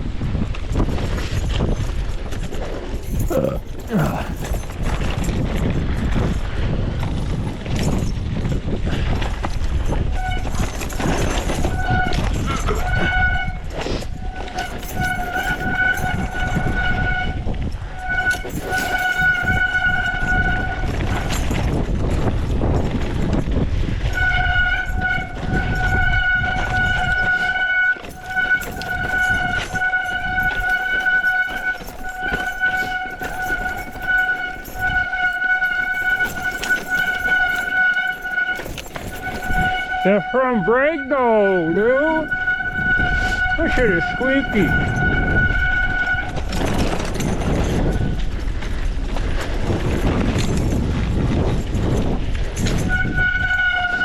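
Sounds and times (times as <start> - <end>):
low rumble of wind and trail: 0.0 - 54.0
bike disc brakes squealing: 9.2 - 21.8, 24.0 - 40.3, 41.2 - 48.4.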